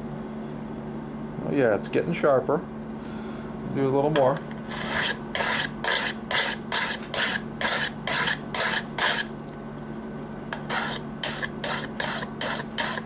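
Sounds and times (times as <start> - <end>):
knife scraping on whetstone: 4.7 - 9.3, 10.6 - 13.0.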